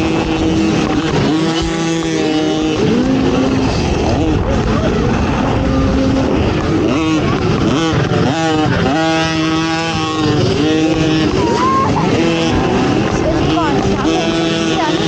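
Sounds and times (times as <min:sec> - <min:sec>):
atv engine revving: 0:00.0 - 0:15.0
wind and track noise: 0:00.0 - 0:15.0.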